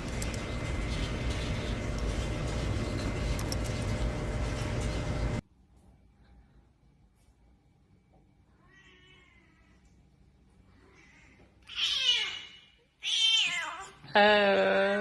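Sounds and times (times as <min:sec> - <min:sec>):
cat meowing: 0:10.9 - 0:14.0.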